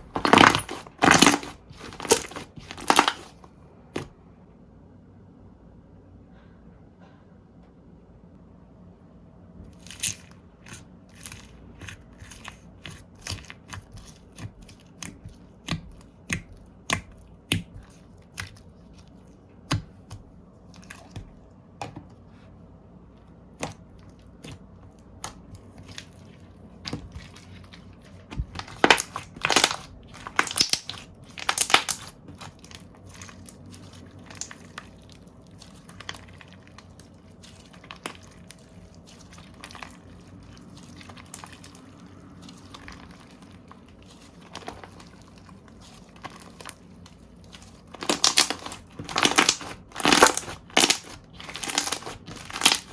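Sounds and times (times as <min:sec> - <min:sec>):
slime clicking and popping: 0:00.1 - 0:03.4, 0:09.8 - 0:18.6, 0:26.9 - 0:52.9.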